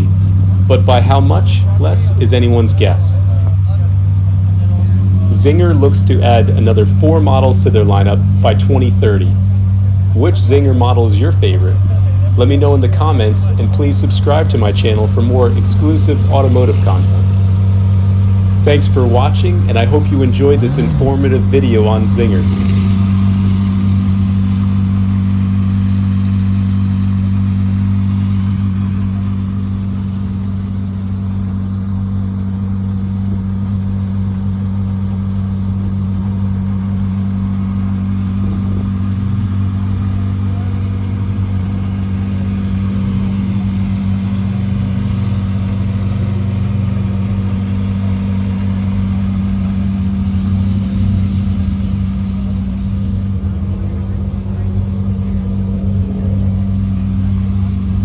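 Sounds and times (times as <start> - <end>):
car engine idling: 0.0 - 58.0.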